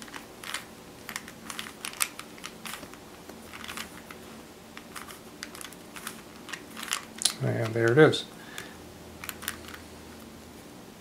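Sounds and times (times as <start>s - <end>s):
puzzle cube clicking: 0.0s - 8.0s.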